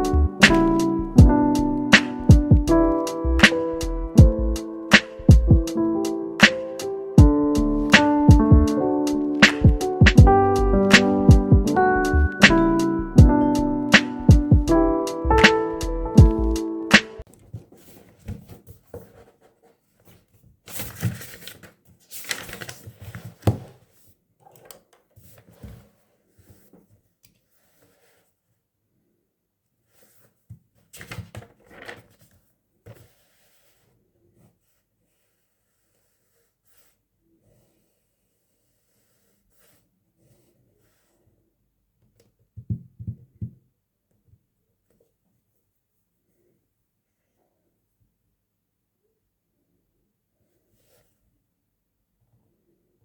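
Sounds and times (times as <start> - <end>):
soft rustling handling: 17.2 - 28.6
handling rustles taps and clicks: 24.4 - 25.9.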